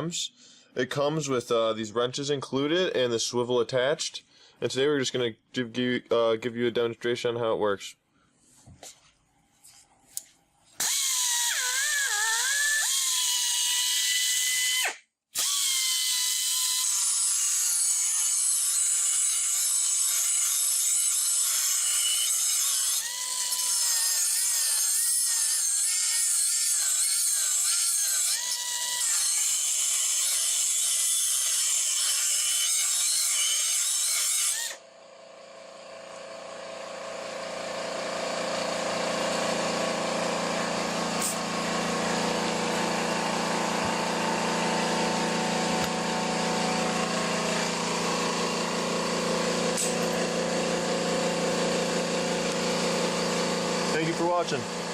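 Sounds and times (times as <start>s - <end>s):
pneumatic die grinder whining: 10.8s - 34.9s, 36.1s - 54.9s.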